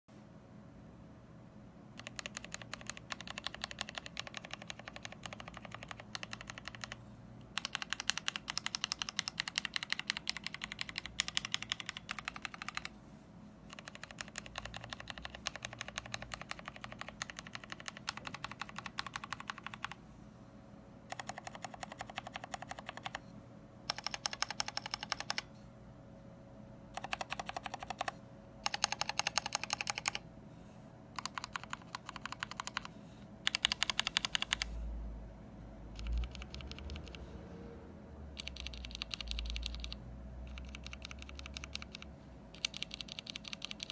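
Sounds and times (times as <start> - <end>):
rapid mechanical keyboard typing: 2.0 - 13.0, 13.7 - 20.0, 21.1 - 23.2, 23.9 - 25.5, 26.9 - 30.2, 31.2 - 34.8, 35.9 - 37.2, 38.3 - 43.9.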